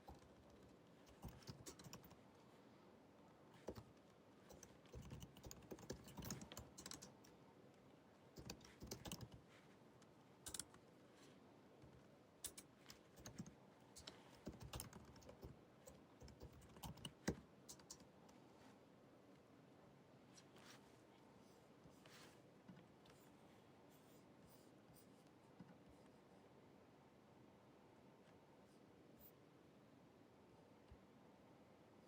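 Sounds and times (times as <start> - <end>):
laptop keyboard typing: 0.0 - 2.2, 3.6 - 7.3, 8.4 - 9.5, 10.4 - 10.7, 12.4 - 18.1.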